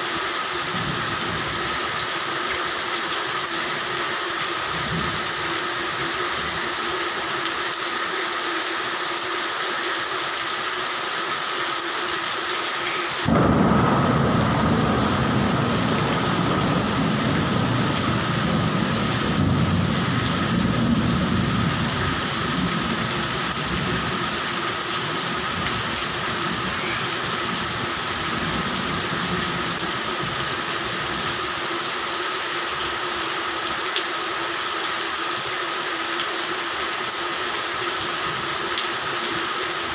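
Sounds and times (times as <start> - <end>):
steady rain: 0.0 - 39.9
thunder clap and rumble: 13.2 - 24.1.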